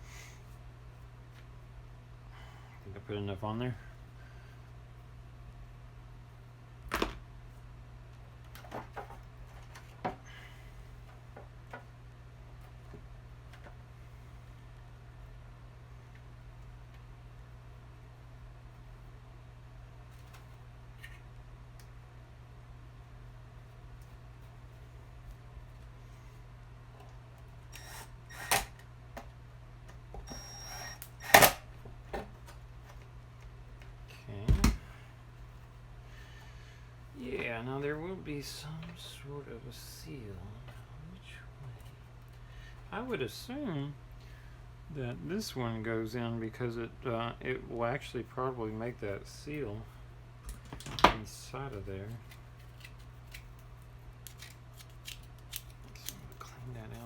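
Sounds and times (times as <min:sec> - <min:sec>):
steady low hum: 0:00.0 - 0:57.0.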